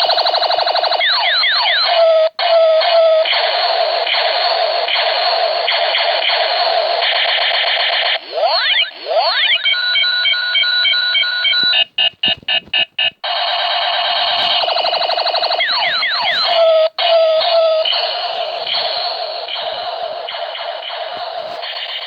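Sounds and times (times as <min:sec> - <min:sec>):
electronic alarm tones: 0:07.6 - 0:22.0.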